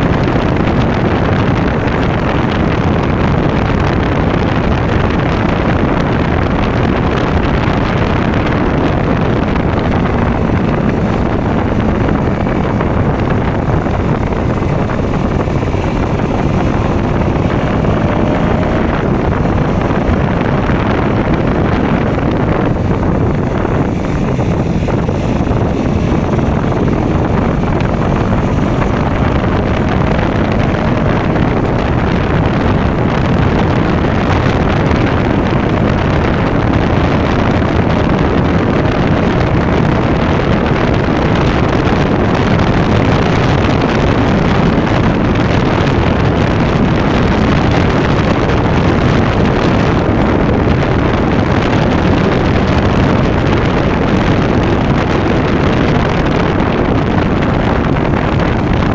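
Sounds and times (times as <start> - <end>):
motorcycle engine running: 0.0 - 58.9
wind noise on microphone: 0.0 - 58.9.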